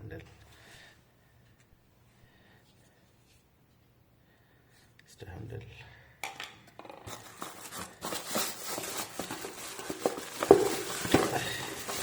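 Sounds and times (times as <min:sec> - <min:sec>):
packaging rustling: 0:07.1 - 0:12.0.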